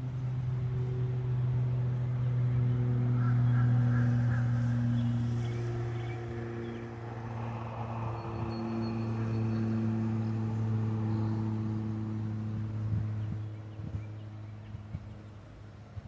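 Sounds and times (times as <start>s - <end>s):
low mechanical hum: 0.0s - 16.0s.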